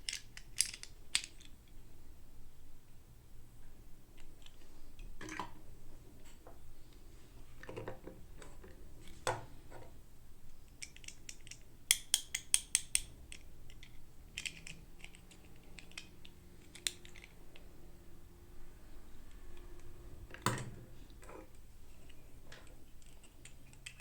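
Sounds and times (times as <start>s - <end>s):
plastic toy pieces clicking: 0.0s - 1.5s, 10.7s - 17.4s, 23.0s - 24.0s.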